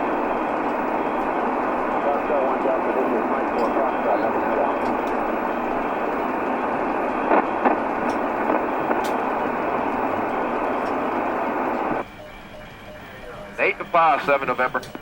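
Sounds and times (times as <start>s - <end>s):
radio static hiss: 0.0s - 15.0s.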